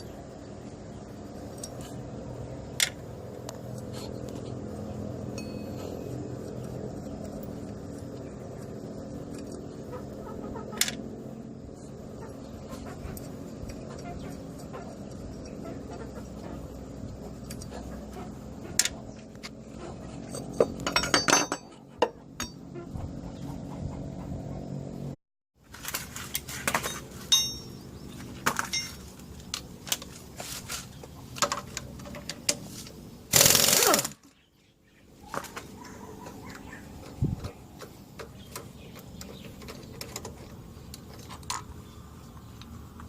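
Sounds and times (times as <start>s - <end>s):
low hum: 0.0s - 25.2s
metal tools clinking on engine parts: 5.3s - 8.0s, 20.1s - 22.7s, 26.3s - 32.7s.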